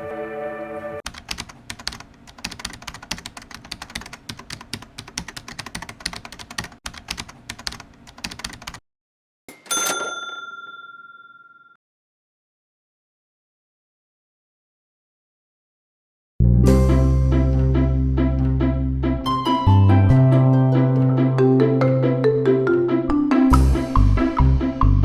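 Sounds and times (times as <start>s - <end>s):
keyboard typing clicks: 1.1s - 8.8s
bell ding: 9.5s - 11.8s.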